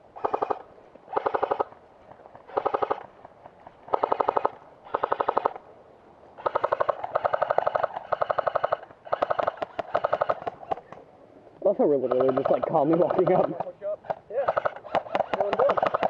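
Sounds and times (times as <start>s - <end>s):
airsoft gun firing bursts: 0.2s - 1.7s, 2.5s - 3.1s, 3.9s - 5.6s, 6.4s - 10.9s, 12.0s - 16.0s.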